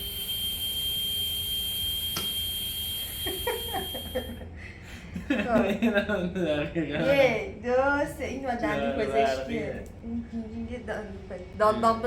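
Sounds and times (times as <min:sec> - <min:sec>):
dentist's drill whining: 0:00.0 - 0:04.4
click: 0:02.1 - 0:02.4.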